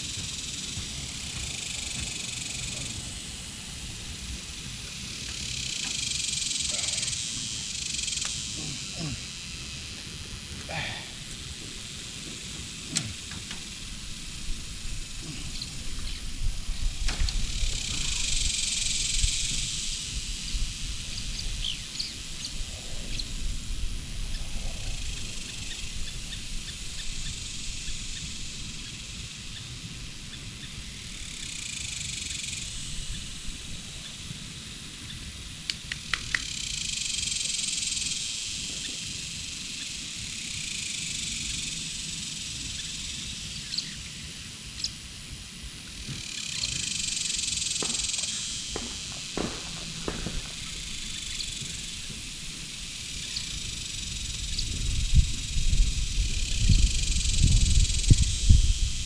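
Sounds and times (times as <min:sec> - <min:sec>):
steady low rumble: 0:00.0 - 0:28.8, 0:47.3 - 0:59.0
high insect buzz: 0:00.0 - 0:59.0.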